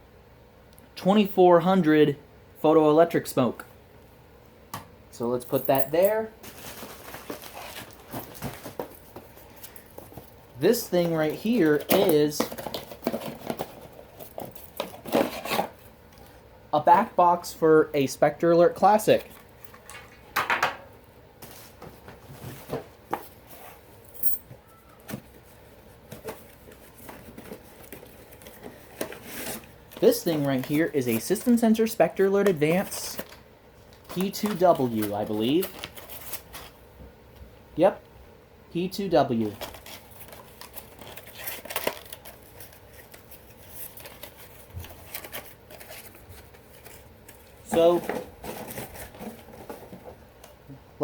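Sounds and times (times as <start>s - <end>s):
handling noise: 5.4s - 16.0s, 39.6s - 50.2s.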